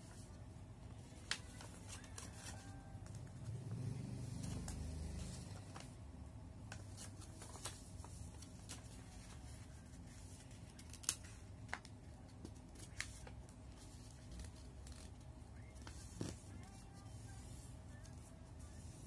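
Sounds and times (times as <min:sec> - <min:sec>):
faint steady hum: 0:00.0 - 0:19.0
paper crinkling and clicking: 0:01.1 - 0:03.2, 0:06.7 - 0:17.0.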